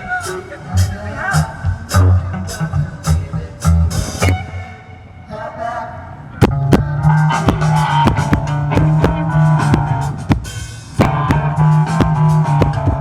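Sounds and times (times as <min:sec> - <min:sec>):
live rock band playing: 0:00.0 - 0:04.8, 0:06.5 - 0:13.0.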